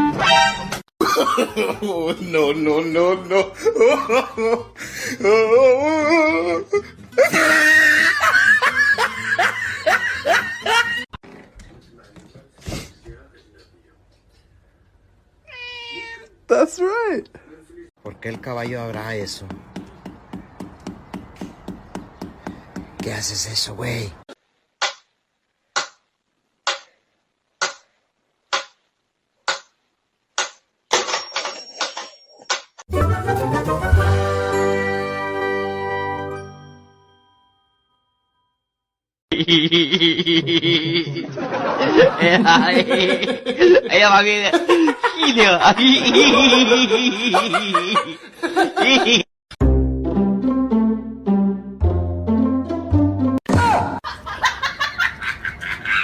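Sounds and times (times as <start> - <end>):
music: 0.0 - 0.8, 6.1 - 11.0, 32.9 - 38.1, 49.6 - 53.4
person laughing: 1.0 - 11.0, 39.3 - 43.9, 44.5 - 49.3
sharp knocks: 18.3 - 23.2.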